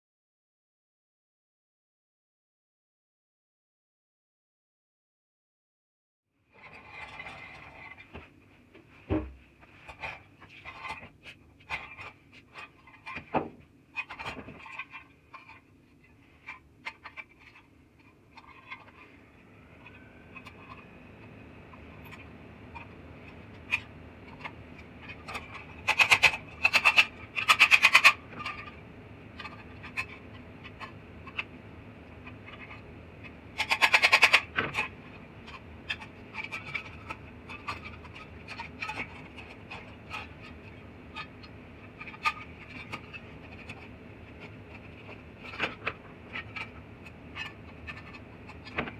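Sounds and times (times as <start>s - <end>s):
machine hum: 6.5s - 48.9s
small hard parts clicking: 21.7s - 28.8s, 29.4s - 48.9s.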